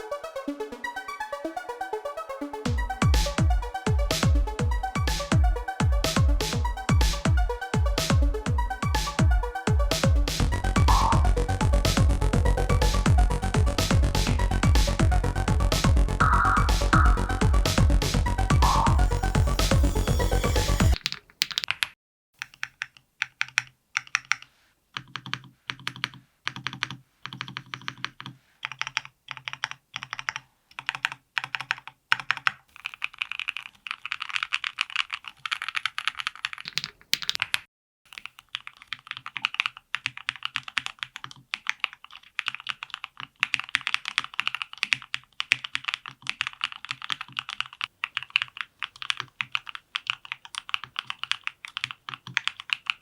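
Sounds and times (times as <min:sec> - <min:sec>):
mechanical keyboard typing: 0:21.0 - 0:53.0.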